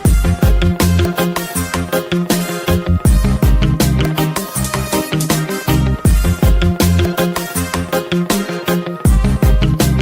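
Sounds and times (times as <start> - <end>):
instrumental hip-hop beat: 0.0 - 10.0.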